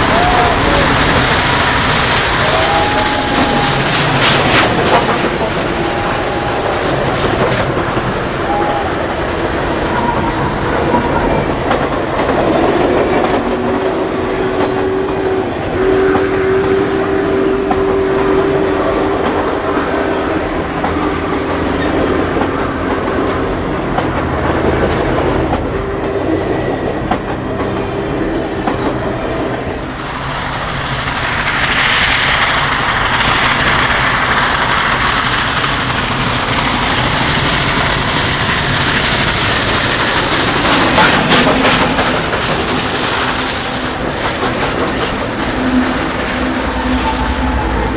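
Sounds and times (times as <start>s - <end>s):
steam whistle blasts: 0.0s - 11.6s, 12.7s - 20.5s
rail clatter: 0.0s - 47.9s
rushing steam hiss: 0.0s - 47.9s
steam locomotive rumble: 0.0s - 47.9s.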